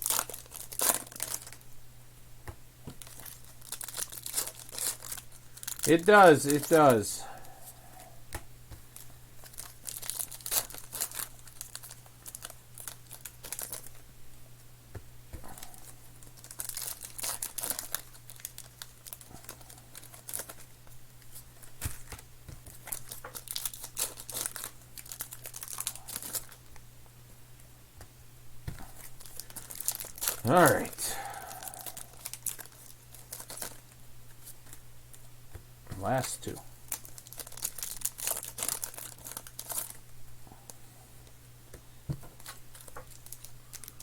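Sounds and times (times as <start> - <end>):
card wrappers tearing and crinkling: 0.0 - 1.6, 3.0 - 7.2, 9.0 - 14.0, 15.6 - 20.7, 21.3 - 26.7, 28.8 - 34.8, 36.0 - 40.0, 42.3 - 44.0.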